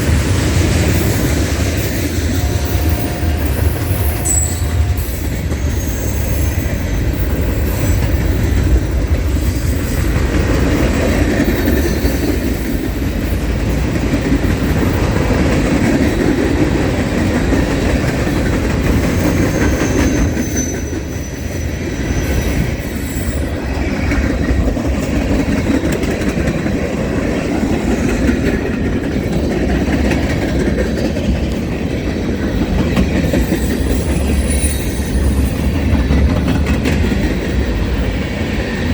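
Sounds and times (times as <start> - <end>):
train wheels rumbling on rails: 0.0 - 38.9
high wheel squeal: 0.3 - 10.1, 19.2 - 23.9, 33.2 - 36.0.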